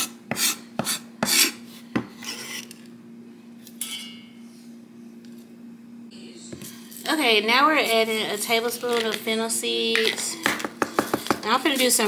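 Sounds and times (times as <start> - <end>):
knife scraping board: 0.0 - 2.8
steady low hum: 0.0 - 12.0.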